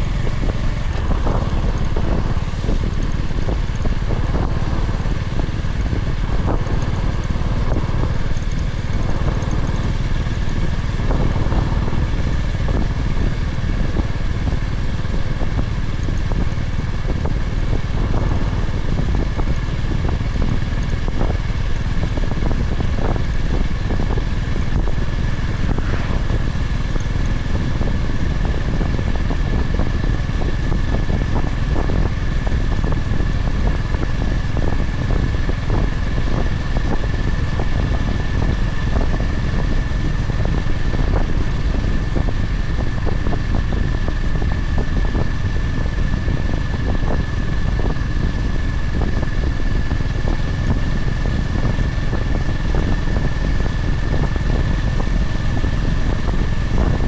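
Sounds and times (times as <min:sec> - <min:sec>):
motorcycle engine running: 0:00.0 - 0:57.0
wind noise on microphone: 0:00.0 - 0:57.0.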